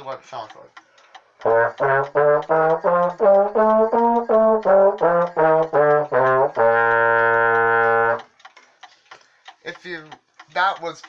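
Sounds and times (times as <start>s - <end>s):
trombone playing a scale: 1.4s - 8.2s.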